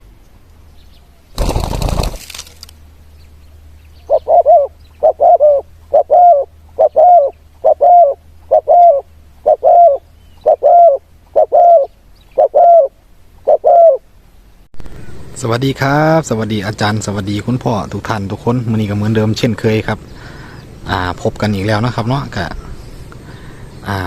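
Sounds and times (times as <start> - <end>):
loud rustling: 1.4 - 2.8
dove cooing: 4.0 - 14.1.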